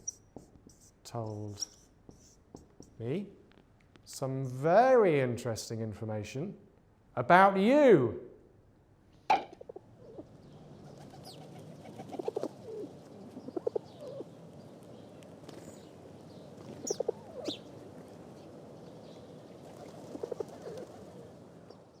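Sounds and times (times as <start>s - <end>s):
faint high bird chirps: 0.0s - 2.9s, 16.8s - 17.7s
pigeons cooing: 9.6s - 14.4s, 16.6s - 17.8s, 19.5s - 21.4s.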